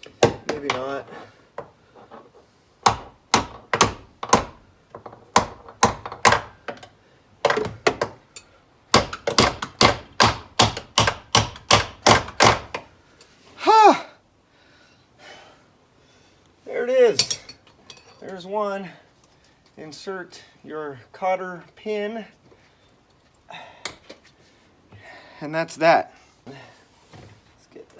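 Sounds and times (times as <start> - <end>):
hammer striking metal pin: 17.2 - 18.2.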